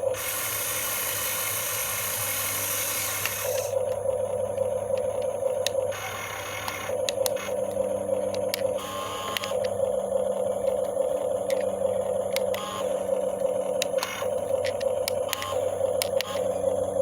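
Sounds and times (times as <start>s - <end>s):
electric motors whirring: 0.0s - 17.0s
sharp clicks: 4.6s - 9.8s, 10.6s - 16.5s.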